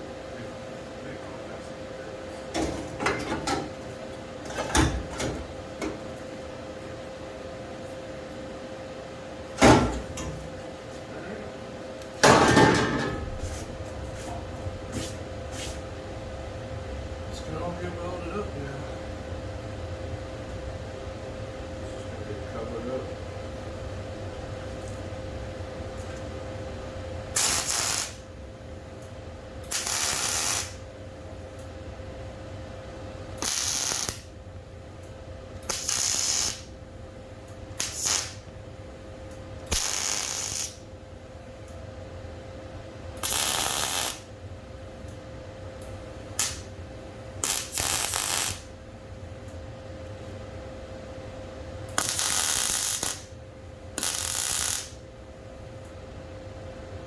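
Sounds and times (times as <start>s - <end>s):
faint steady hum: 0.0s - 57.0s
welding crackle bursts: 27.4s - 28.2s, 29.6s - 30.8s, 33.4s - 34.3s, 35.6s - 36.7s, 37.8s - 38.4s, 39.7s - 40.8s, 43.2s - 44.3s, 46.4s - 46.7s, 47.4s - 48.7s, 51.9s - 53.3s, 54.0s - 55.0s.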